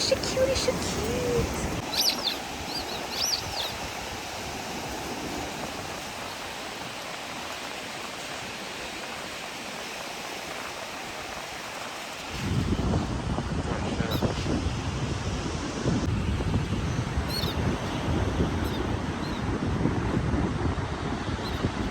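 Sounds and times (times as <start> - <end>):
ocean surf hissing: 0.0 - 16.0
wind buffeting microphone: 0.0 - 21.9
bird chirping: 1.8 - 3.8.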